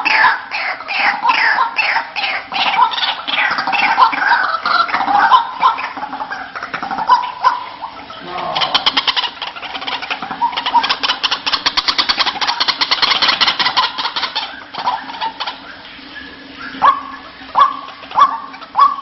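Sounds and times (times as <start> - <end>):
bird rattling chatter: 10.7 - 14.4.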